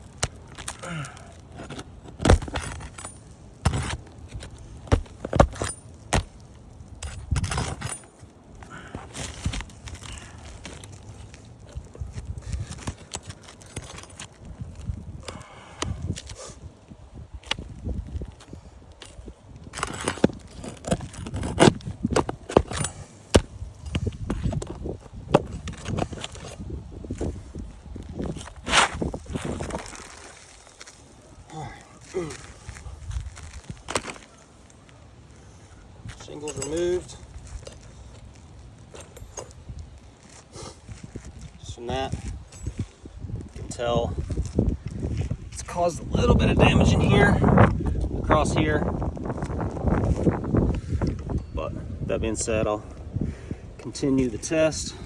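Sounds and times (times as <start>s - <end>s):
metal tool prying roof shingles: 0.0s - 16.4s, 18.3s - 31.0s
roof shingles scraping: 17.6s - 47.3s.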